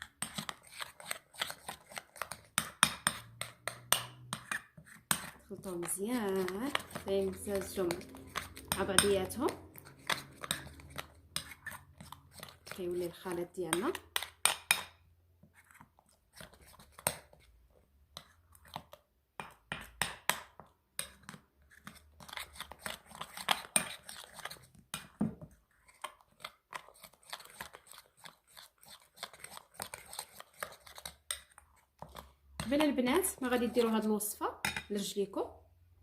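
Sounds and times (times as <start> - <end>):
spoon stirring thick paste: 0.0 - 35.4
spoon tapping bowl: 6.3 - 9.5.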